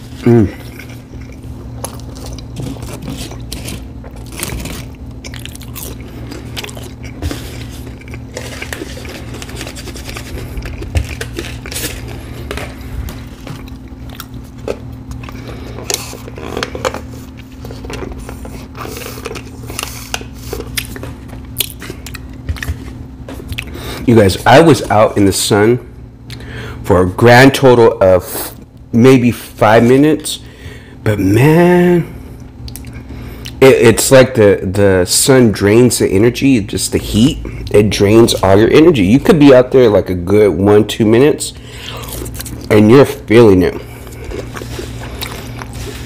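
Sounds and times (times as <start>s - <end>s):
person chewing food: 0.0s - 24.1s, 32.5s - 33.6s, 41.6s - 42.7s, 43.7s - 46.0s
steady low hum: 0.0s - 46.0s.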